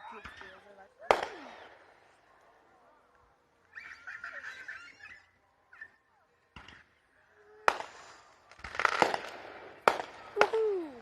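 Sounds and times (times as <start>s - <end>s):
fireworks bangs: 0.0s - 2.1s, 7.6s - 11.0s
fireworks crackling: 0.0s - 2.6s, 7.7s - 11.0s.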